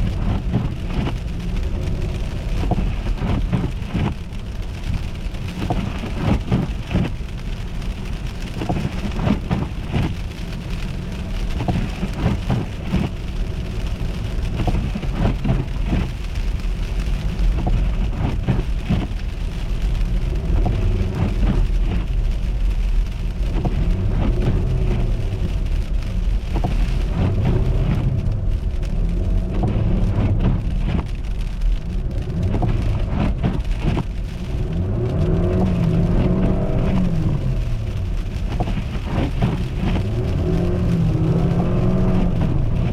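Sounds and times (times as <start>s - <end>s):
heavy rumble: 0.0s - 42.9s
car engine revving: 23.4s - 42.9s.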